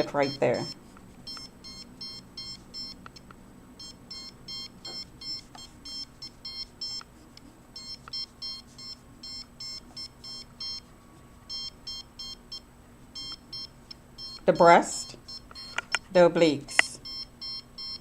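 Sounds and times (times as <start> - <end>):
short electronic beeps: 0.2 - 3.0, 3.8 - 7.0, 7.8 - 10.8, 13.2 - 15.8, 17.0 - 18.0.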